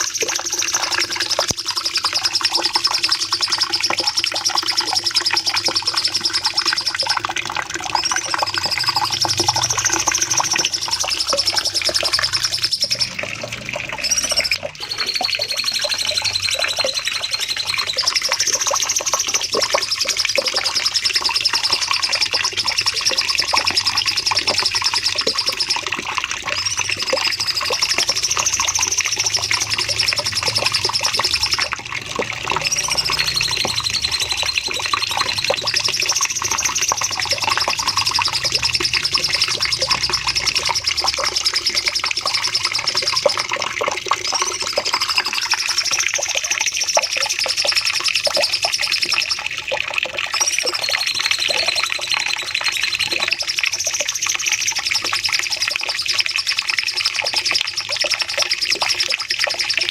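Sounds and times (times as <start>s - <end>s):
lower chirps: 0.0s - 46.2s
bird singing high rapid trill: 0.0s - 49.4s.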